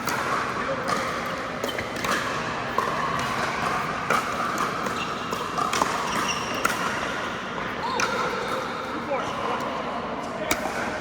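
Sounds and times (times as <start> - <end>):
sneaker squeaks on court floor: 4.9 - 7.2.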